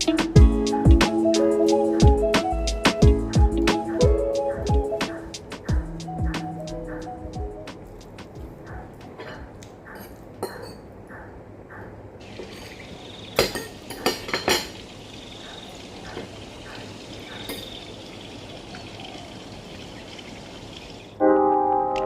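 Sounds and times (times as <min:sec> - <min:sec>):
cutlery clinking on a plate: 0:09.1 - 0:10.9, 0:13.4 - 0:14.8.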